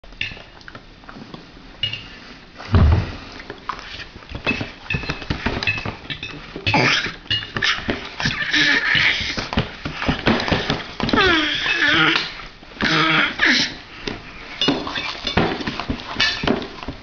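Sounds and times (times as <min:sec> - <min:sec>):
loud thump: 0:02.7 - 0:03.2.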